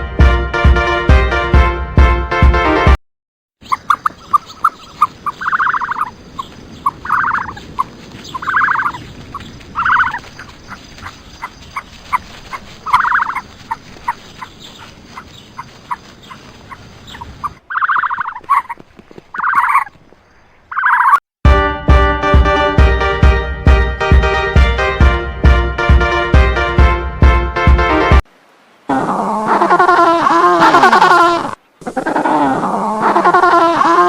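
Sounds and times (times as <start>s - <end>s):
bird rattling calls: 3.6s - 21.2s.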